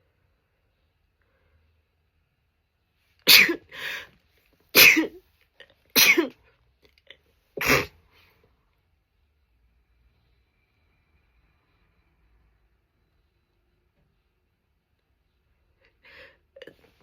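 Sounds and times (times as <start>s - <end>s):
woman sneezing: 3.3s - 4.0s, 4.8s - 5.2s, 6.0s - 6.3s, 7.6s - 8.0s.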